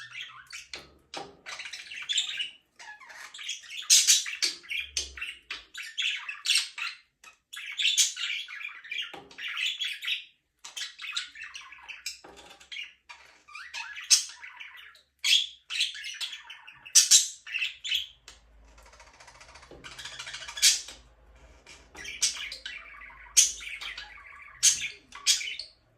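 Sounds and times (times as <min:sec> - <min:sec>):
budgerigars chirping: 0:00.0 - 0:25.9.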